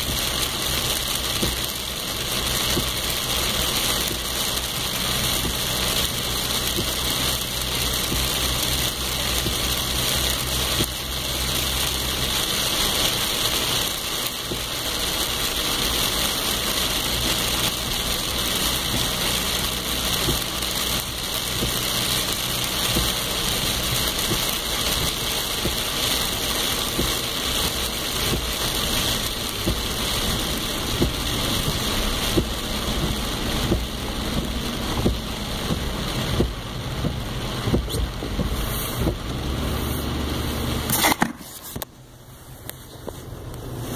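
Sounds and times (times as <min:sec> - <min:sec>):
steady rain falling: 0:00.0 - 0:43.9.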